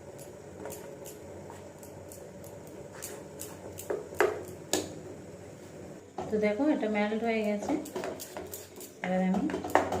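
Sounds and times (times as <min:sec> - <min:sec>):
spoon stirring chocolate in a bowl: 0:07.4 - 0:10.0.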